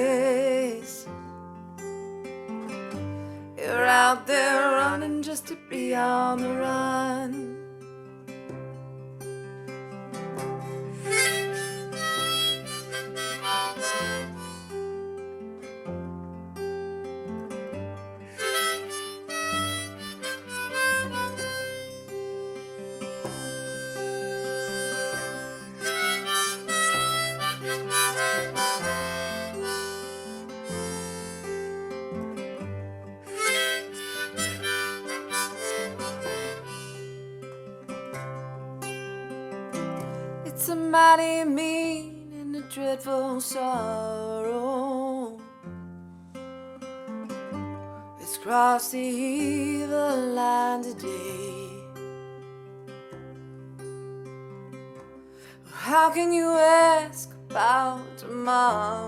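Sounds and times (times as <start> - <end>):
strummed acoustic guitar: 0.0 - 59.0
harmonica solo: 10.6 - 15.0, 18.3 - 32.1, 33.2 - 37.4
bass: 23.1 - 30.2.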